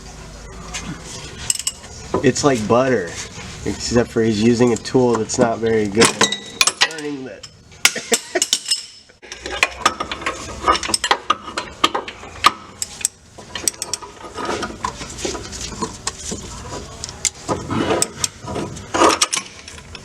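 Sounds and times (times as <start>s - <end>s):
metal clinks: 8.2s - 11.2s.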